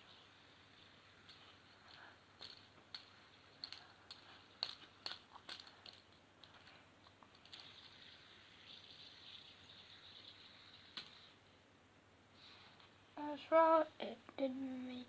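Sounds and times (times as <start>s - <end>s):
fidget spinner clicks and taps: 0.8s - 8.1s, 8.7s - 11.3s.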